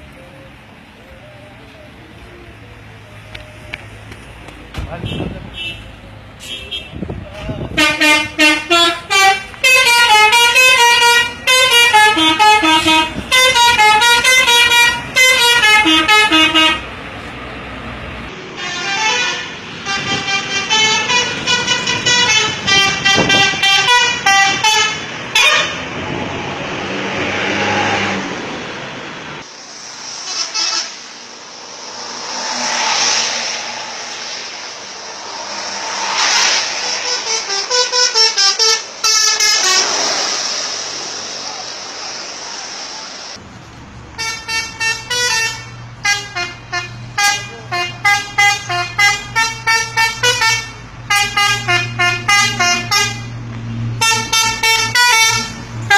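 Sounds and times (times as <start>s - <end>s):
musical bus horn melody: 7.7s - 16.9s, 18.6s - 25.8s, 30.2s - 31.0s, 37.0s - 40.0s, 44.2s - 53.4s, 54.0s - 55.9s
rushing noise: 25.0s - 43.5s.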